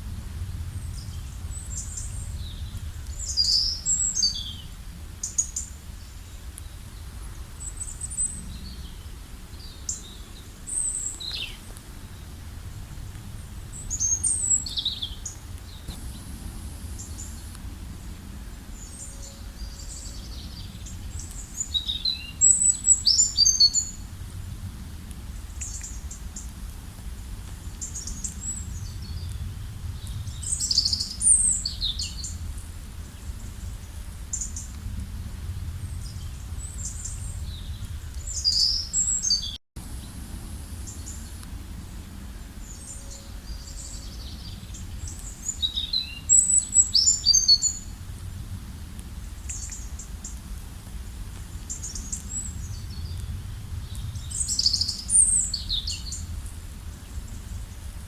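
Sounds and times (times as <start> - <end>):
low background rumble: 0.0 - 23.0
songbirds chirping and whistling: 0.8 - 12.4, 13.7 - 24.0, 27.7 - 34.8, 35.8 - 41.5, 42.1 - 48.0, 51.7 - 57.8.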